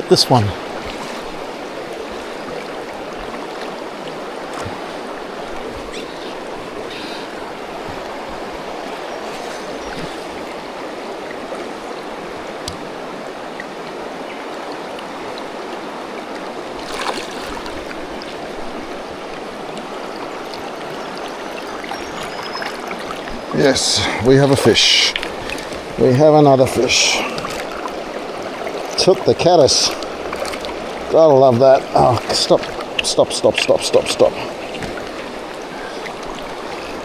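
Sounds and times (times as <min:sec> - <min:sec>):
fast-flowing river rushing: 0:00.0 - 0:37.0
water splash: 0:16.7 - 0:18.4, 0:21.9 - 0:35.5.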